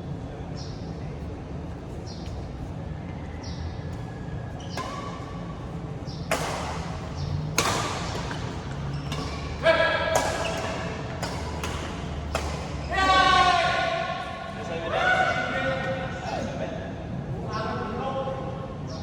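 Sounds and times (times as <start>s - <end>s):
rackets hitting shuttlecock: 4.0s - 14.3s.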